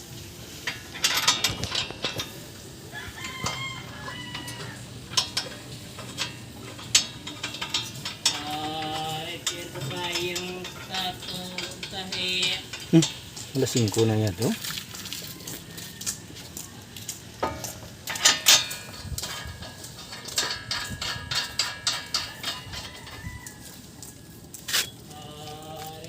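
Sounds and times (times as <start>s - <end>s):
sharp clicks and knocks: 0.6s - 2.5s, 3.2s - 14.0s
rooster crowing: 2.8s - 5.2s, 14.9s - 16.8s, 22.3s - 24.4s.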